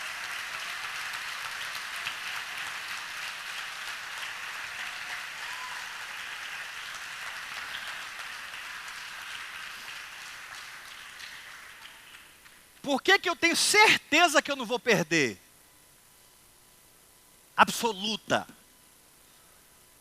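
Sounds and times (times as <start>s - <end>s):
congregation applauding: 0.0s - 13.6s.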